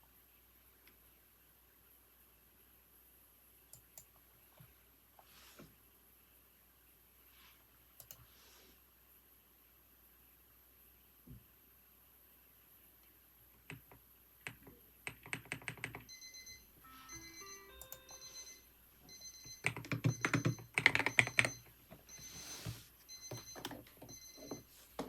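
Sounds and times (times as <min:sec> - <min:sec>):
keyboard typing: 0:13.6 - 0:22.3
stepped chime tune: 0:16.1 - 0:19.6
timer alarm high beeps: 0:16.1 - 0:24.6.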